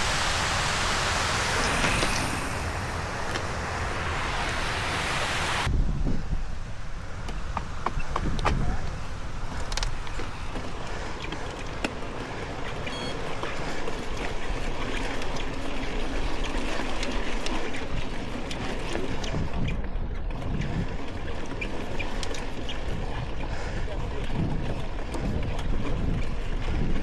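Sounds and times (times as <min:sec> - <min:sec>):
wind on microphone: 0:00.0 - 0:11.8, 0:13.7 - 0:27.0
bike tyres on dirt trail: 0:00.0 - 0:27.0
bike clicks and rattles: 0:07.2 - 0:27.0.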